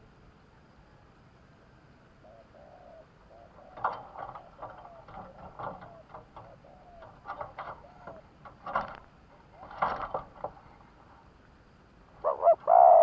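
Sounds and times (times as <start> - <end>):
dove cooing: 2.2 - 10.5, 12.2 - 13.0
sharp clicks and knocks: 3.7 - 11.2.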